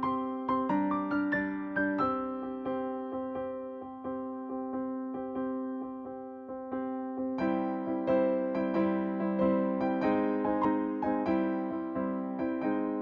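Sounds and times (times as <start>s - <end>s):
electric piano chords: 0.0s - 13.0s.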